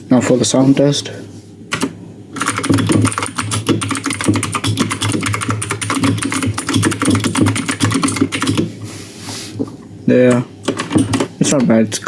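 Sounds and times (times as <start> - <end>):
fast mechanical keyboard typing: 1.8 - 8.7, 10.6 - 11.3.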